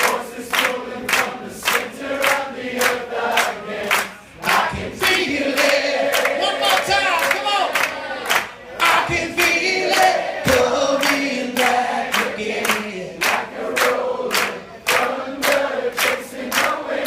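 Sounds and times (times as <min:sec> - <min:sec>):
audience clapping in rhythm: 0:00.0 - 0:17.0
crowd singing and shouting: 0:00.0 - 0:17.0.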